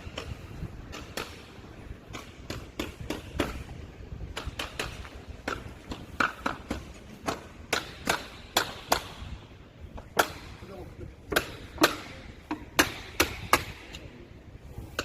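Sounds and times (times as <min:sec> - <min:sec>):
sharp knocks and clicks: 0:02.1 - 0:03.7, 0:04.3 - 0:09.2.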